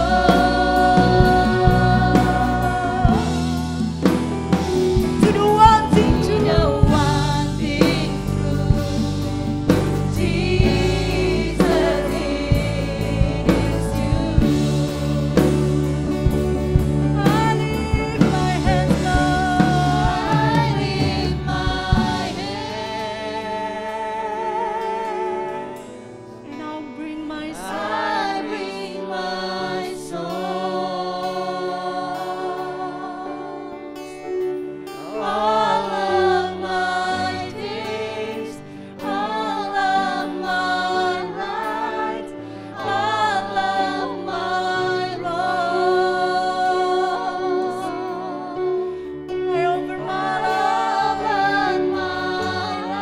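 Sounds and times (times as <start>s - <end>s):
person singing: 0.0s - 16.2s, 17.2s - 34.3s, 34.9s - 53.0s
drum kit: 0.0s - 23.6s
bass: 0.0s - 23.8s
worship song by a band: 0.0s - 53.0s.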